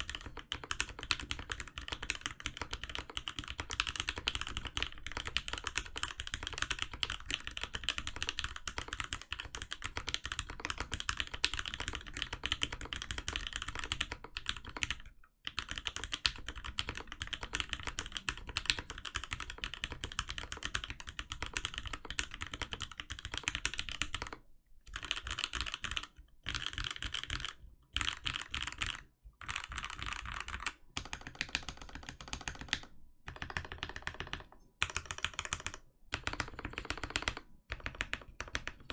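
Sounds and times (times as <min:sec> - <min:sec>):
typing on mechanical keyboard: 0:00.0 - 0:38.9.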